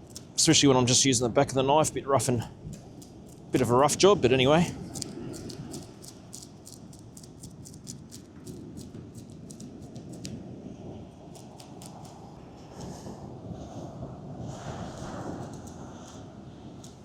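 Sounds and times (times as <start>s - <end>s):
knife scraping fish scales: 4.7s - 10.3s.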